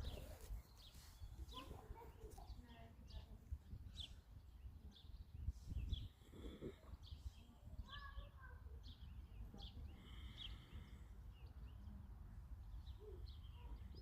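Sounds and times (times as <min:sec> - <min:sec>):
small birds chirping: 0:00.0 - 0:14.0.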